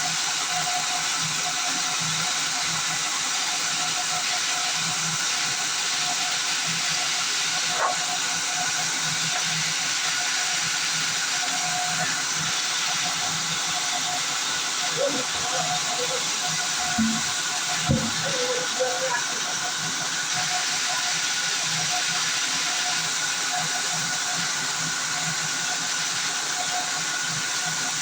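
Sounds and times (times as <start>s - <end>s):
band saw running: 0.0s - 28.0s.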